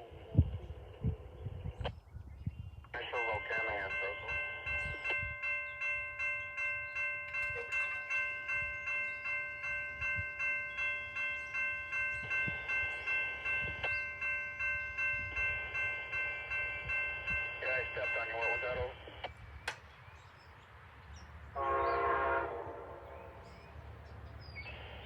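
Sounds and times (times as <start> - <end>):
crossing bell ringing rapidly: 3.0 - 19.0
passing train rumble: 3.0 - 25.0.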